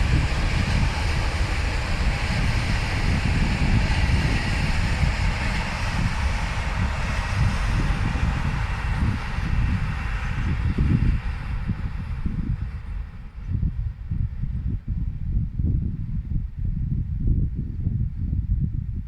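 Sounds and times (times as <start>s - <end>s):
freight train rumbling past: 0.0s - 14.8s
wind buffeting microphone: 0.0s - 19.0s.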